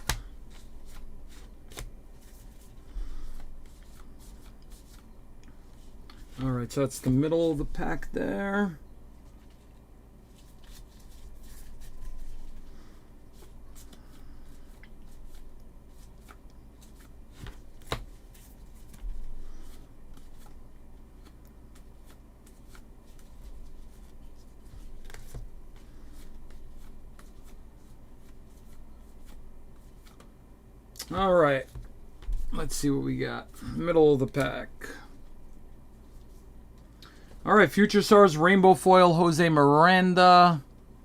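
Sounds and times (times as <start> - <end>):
cards rustling: 0.0 - 8.4, 9.3 - 30.3.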